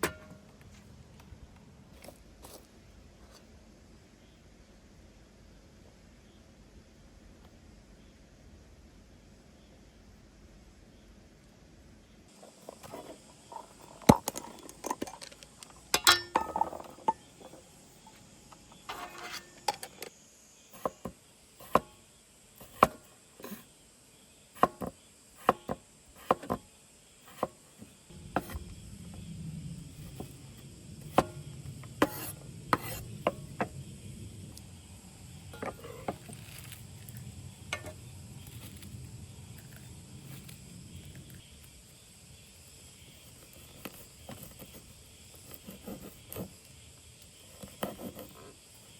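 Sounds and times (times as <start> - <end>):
hard objects clicking and clinking: 13.5 - 17.7
steady low hum: 27.0 - 47.6.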